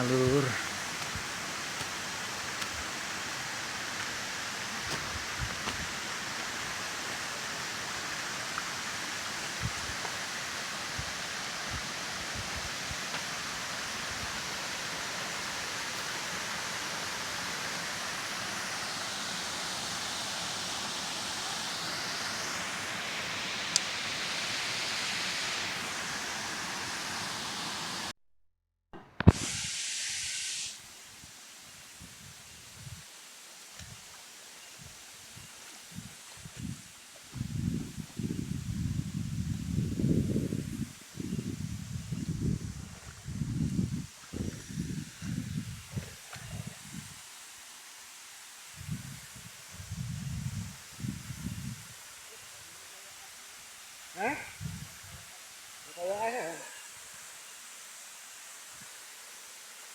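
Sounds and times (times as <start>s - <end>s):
waterfall rushing: 0.0s - 28.1s, 52.2s - 54.6s, 55.2s - 57.1s.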